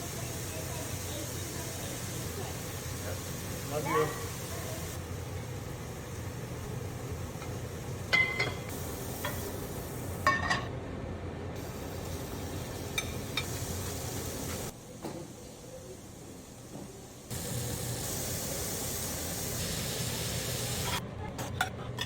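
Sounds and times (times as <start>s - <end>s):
steady kitchen hiss: 0.0s - 22.0s
utensils clinking on dishes: 7.4s - 9.5s, 10.2s - 10.7s, 12.9s - 13.6s.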